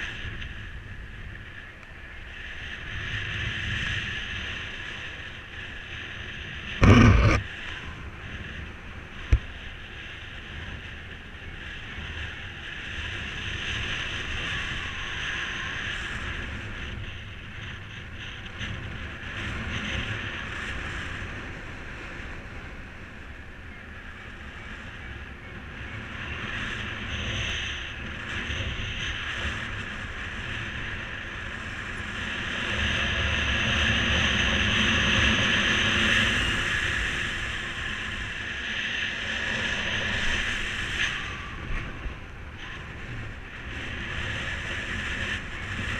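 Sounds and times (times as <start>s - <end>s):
wind rushing over microphone: 0.0s - 45.9s.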